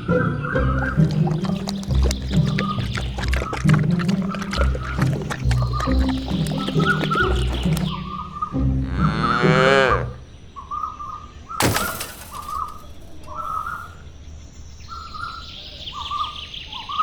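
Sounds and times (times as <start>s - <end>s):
bird chirping: 0.0s - 8.8s, 12.4s - 17.0s.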